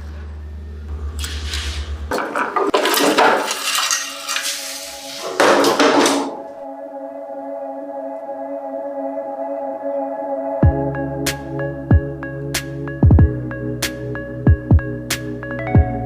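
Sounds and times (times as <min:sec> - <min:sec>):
low humming drone: 0:00.0 - 0:02.2
ambient music with held tones: 0:00.0 - 0:16.0
metal knocking and clattering: 0:02.1 - 0:04.6, 0:05.2 - 0:06.4.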